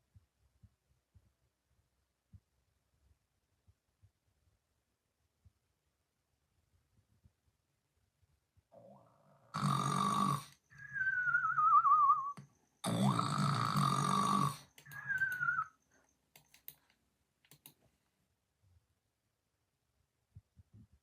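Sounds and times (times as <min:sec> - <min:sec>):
person snoring: 0:08.8 - 0:11.3, 0:12.8 - 0:15.6
high sliding whistle: 0:10.8 - 0:12.4, 0:15.0 - 0:15.8
faint clicks: 0:14.7 - 0:17.9.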